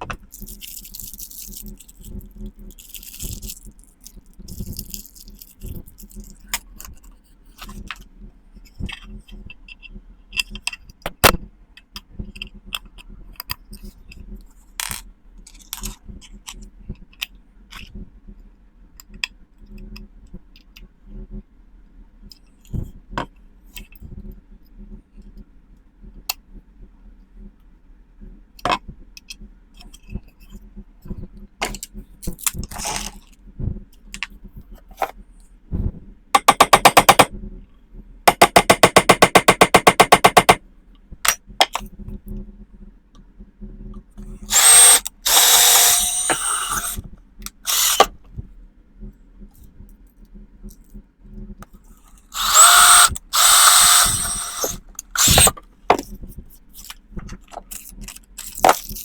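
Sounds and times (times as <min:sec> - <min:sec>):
knocks and clicks: 0:36.4 - 0:37.3, 0:38.3 - 0:40.6, 0:52.4 - 0:56.0
power drill hammering: 0:36.4 - 0:37.3, 0:38.3 - 0:40.6, 0:44.5 - 0:47.0, 0:47.7 - 0:48.1, 0:52.4 - 0:56.0
power drill whirring: 0:36.4 - 0:37.3, 0:38.3 - 0:40.6, 0:44.5 - 0:47.0, 0:47.6 - 0:48.1, 0:52.3 - 0:55.6.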